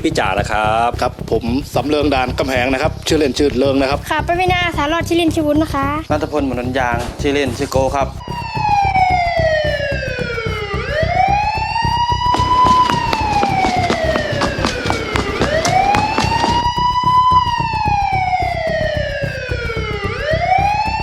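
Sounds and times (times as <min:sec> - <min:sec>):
wailing siren: 0:08.2 - 0:21.0.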